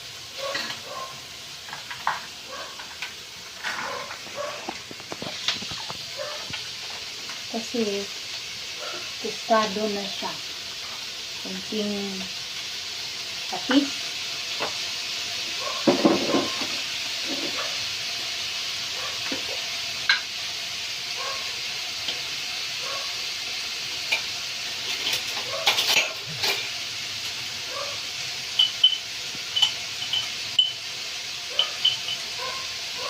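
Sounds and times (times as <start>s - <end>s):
chicken sizzling in a frying pan: 0.0s - 33.0s
utensil scraping and clinking on pan: 1.7s - 6.6s, 24.1s - 26.7s, 28.6s - 30.8s, 31.5s - 32.3s.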